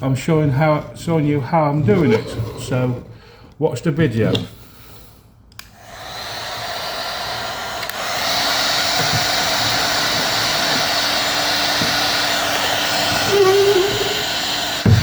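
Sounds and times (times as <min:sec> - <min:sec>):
heat gun blowing: 0:04.6 - 0:15.0.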